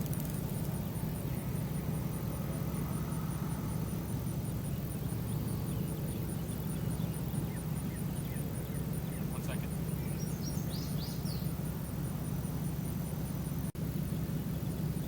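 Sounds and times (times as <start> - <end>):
bird chirps: 5.7 - 11.6.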